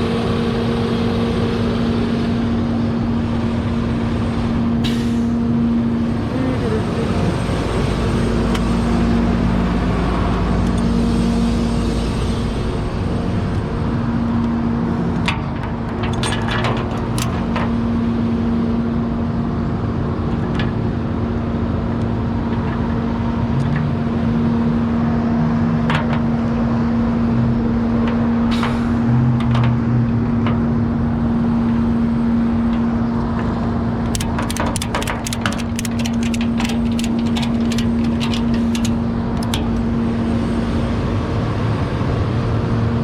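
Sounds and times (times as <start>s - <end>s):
vehicle engine humming: 0.0s - 43.0s
sharp clicks: 34.0s - 39.8s.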